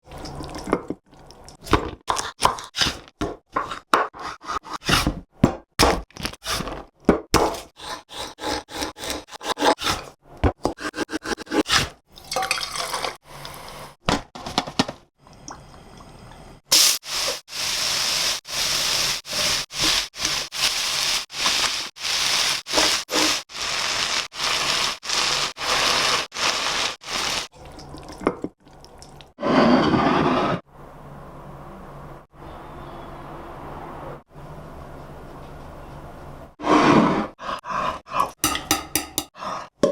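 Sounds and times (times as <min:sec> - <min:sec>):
fish sizzling in a pan: 0:16.7 - 0:27.5.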